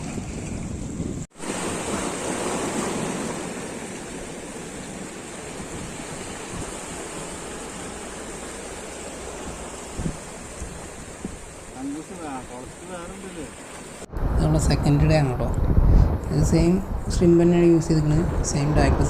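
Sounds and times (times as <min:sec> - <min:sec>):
wind buffeting microphone: 0:00.0 - 0:19.0
water washing: 0:01.3 - 0:14.1.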